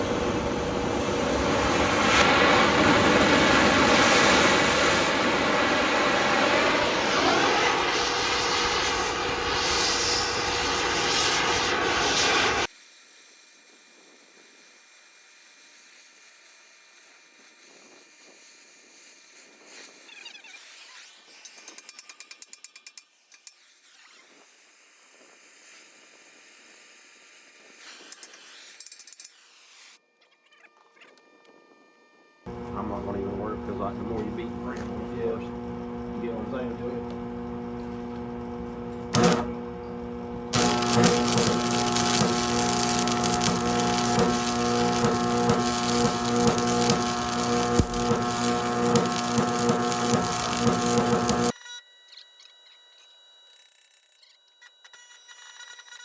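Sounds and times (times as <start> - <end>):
heavy equipment engine running: 0.0 - 8.3, 32.5 - 51.5
rapid mechanical clicking: 39.1 - 39.6, 40.5 - 51.5
steady hiss: 40.6 - 51.5.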